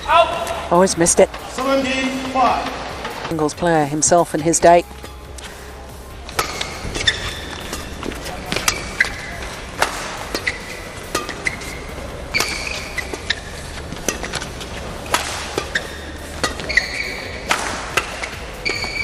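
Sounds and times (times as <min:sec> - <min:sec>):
shoes squeaking on court: 0:00.0 - 0:19.0
rackets hitting shuttlecock: 0:04.5 - 0:19.0.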